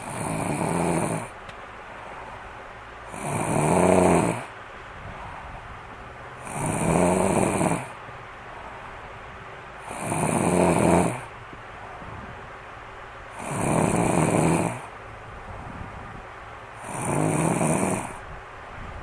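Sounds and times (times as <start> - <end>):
person snoring: 0.0 - 1.4, 3.1 - 4.5, 6.4 - 8.0, 9.8 - 11.3, 13.3 - 14.9, 16.8 - 18.2
quiet breathing: 0.0 - 5.8, 16.7 - 18.4.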